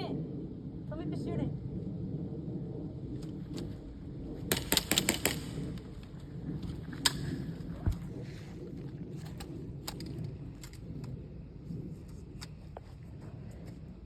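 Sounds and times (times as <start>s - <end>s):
steady low rumble: 0.0s - 14.0s
airsoft gun shots: 4.5s - 5.8s.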